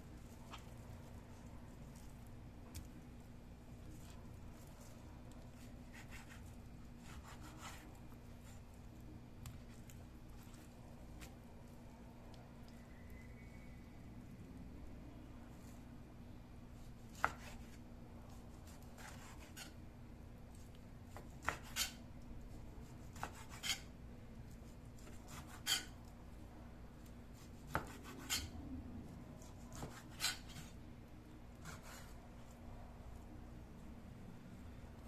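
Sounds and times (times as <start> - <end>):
knife cutting on wooden board: 5.9 - 6.4, 7.0 - 7.8, 19.0 - 19.7, 21.4 - 22.0, 23.0 - 23.8, 27.5 - 28.5, 29.4 - 30.7, 31.6 - 32.2.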